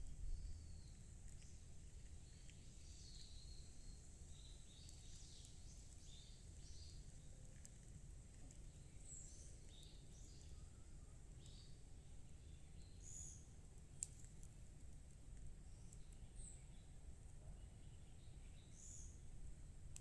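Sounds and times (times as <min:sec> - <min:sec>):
low steady rumble: 0:00.0 - 0:12.6
small birds chirping: 0:00.0 - 0:20.0.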